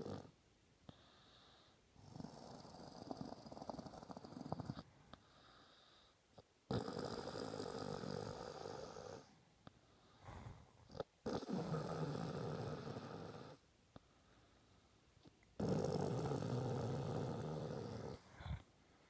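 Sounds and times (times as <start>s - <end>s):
person snoring: 6.7s - 9.3s, 10.2s - 13.6s, 15.6s - 18.7s.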